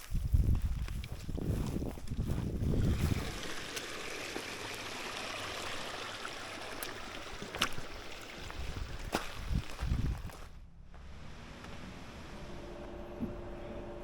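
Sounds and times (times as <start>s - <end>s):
stream water rushing: 3.0s - 9.4s.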